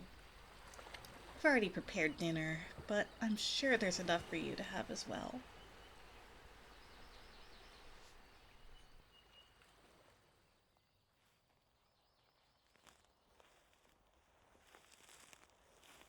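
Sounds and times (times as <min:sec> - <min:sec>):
faint bird chirps: 0:00.0 - 0:09.8
soft outdoor wash: 0:00.0 - 0:11.8.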